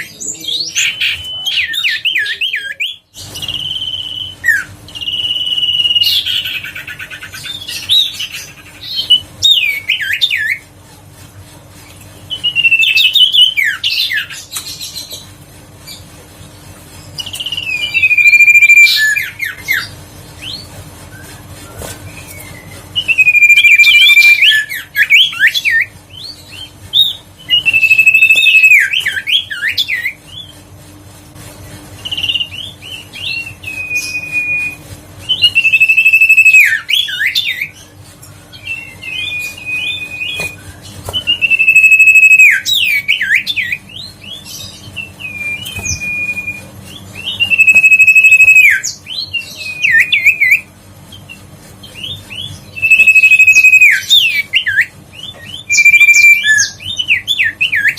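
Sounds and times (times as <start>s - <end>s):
bird singing whistled phrases: 0.6s - 6.8s, 12.3s - 14.4s, 17.2s - 20.6s, 21.2s - 30.5s, 32.0s - 37.8s, 38.6s - 50.7s, 51.9s - 57.9s.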